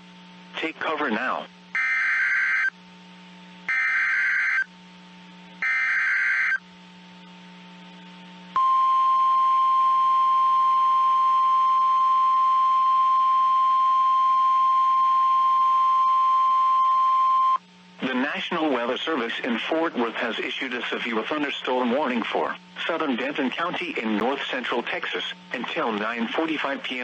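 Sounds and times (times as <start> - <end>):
steady alarm tone: 1.8 - 2.7, 3.7 - 4.7, 5.6 - 6.6, 8.6 - 17.6.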